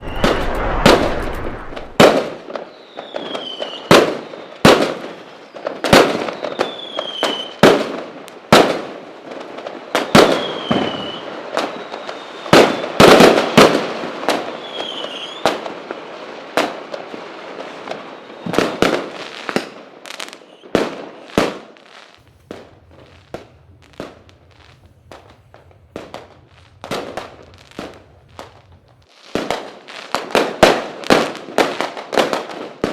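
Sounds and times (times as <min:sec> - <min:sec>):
fireworks whistling: 0:00.0 - 0:04.6, 0:22.2 - 0:29.0
fireworks banging and crackling: 0:00.0 - 0:32.9
small firework cracks: 0:18.7 - 0:32.9.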